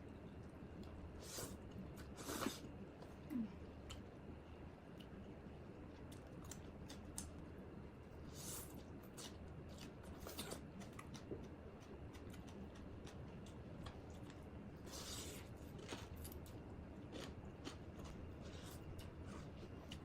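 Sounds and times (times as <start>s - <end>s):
close-miked eating crunches: 8.3s - 20.0s.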